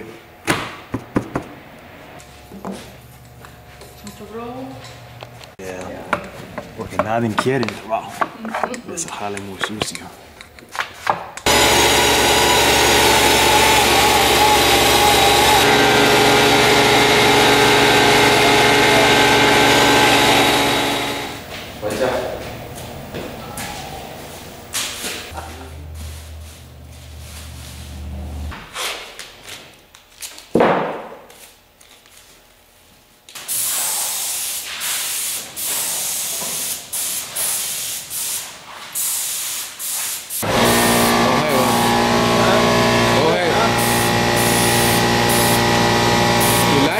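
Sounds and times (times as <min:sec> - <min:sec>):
small motor humming: 0:11.4 - 0:21.5, 0:40.4 - 0:46.9
spray gun hissing: 0:33.5 - 0:42.0, 0:43.8 - 0:46.8.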